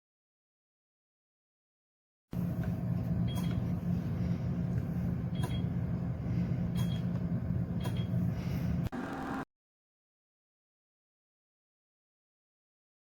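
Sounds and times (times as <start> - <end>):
low motor hum: 2.4 - 9.5.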